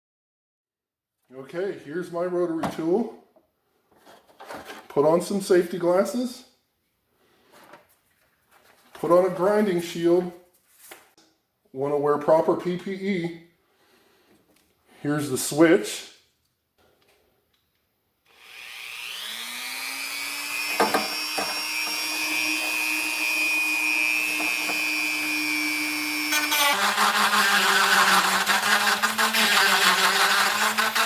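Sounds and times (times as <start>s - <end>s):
rotary tool whining: 18.3s - 31.0s
rotary tool grinding plastic: 25.9s - 31.0s.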